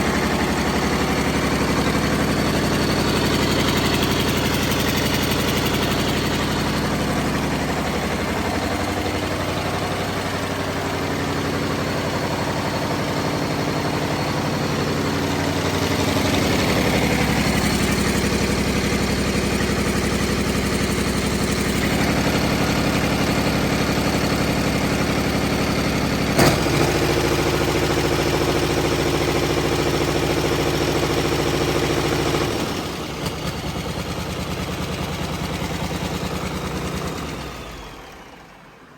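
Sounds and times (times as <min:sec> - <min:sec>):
diesel engine running: 0:00.0 - 0:38.9
sharp engine knock: 0:26.3 - 0:28.3.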